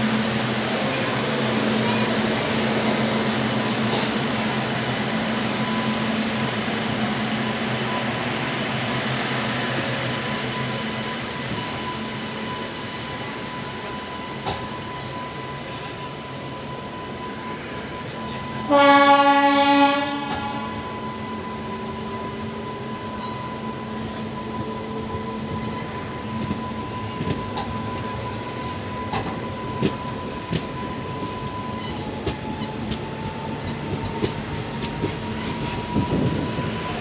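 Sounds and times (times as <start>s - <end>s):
train coach rumbling on track: 0.0s - 37.0s
locomotive horn blast: 18.6s - 20.9s.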